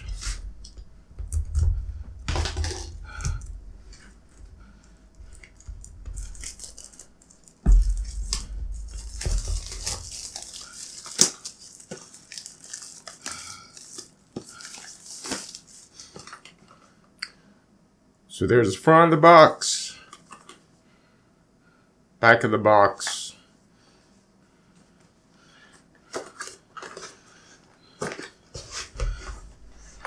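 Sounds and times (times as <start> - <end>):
clicks and knocks: 0.0 - 10.5
deep handling thumps: 0.0 - 10.5, 28.9 - 30.0
packaging rustling and tearing: 0.0 - 16.5.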